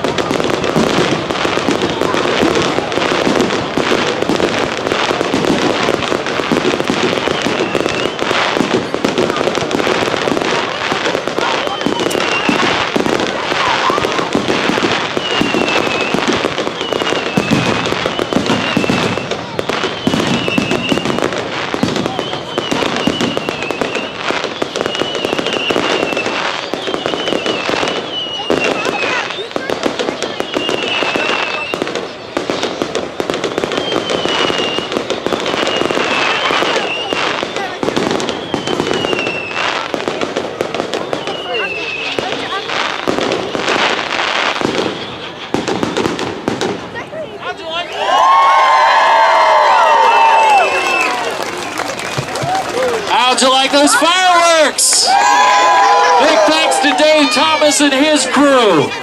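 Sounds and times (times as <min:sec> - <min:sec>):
fireworks bangs and crackling: 0:00.0 - 0:59.0.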